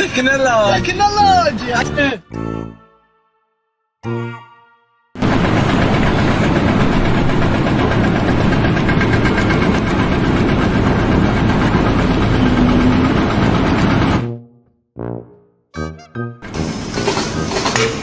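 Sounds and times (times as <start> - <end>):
heavy machine engine running: 5.2 - 14.4, 16.4 - 18.0.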